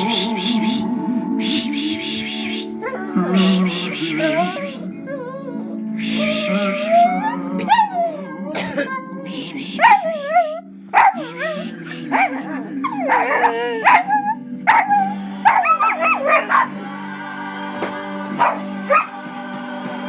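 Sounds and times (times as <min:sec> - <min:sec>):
background music: 0:00.0 - 0:20.0
dog yipping and whining: 0:04.2 - 0:08.2, 0:09.8 - 0:16.7, 0:18.4 - 0:19.2
dog barking: 0:09.5 - 0:16.8, 0:18.3 - 0:19.2.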